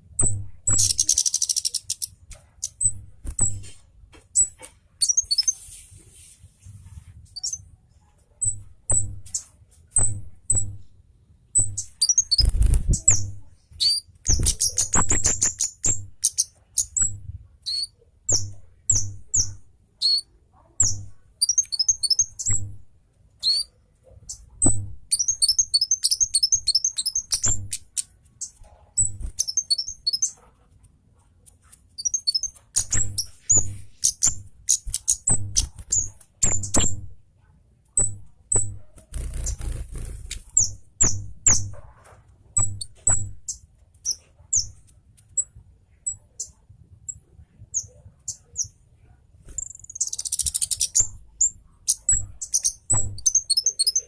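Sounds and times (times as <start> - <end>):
bird chirping in sharp trills: 0.2 - 3.7, 4.4 - 5.6, 11.6 - 22.8, 23.4 - 23.7, 24.3 - 30.4, 32.0 - 37.1, 38.0 - 41.8, 49.6 - 54.0.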